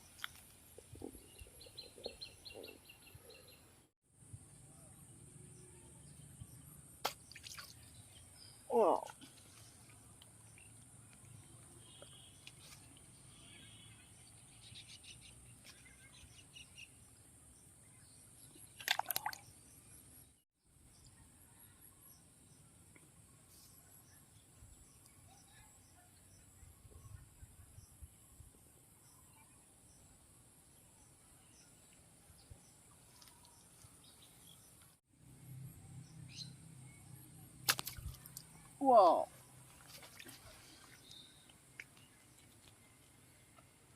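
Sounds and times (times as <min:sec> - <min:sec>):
faint bird chirps: 0:11.4 - 0:17.0, 0:21.0 - 0:22.2, 0:35.8 - 0:43.0.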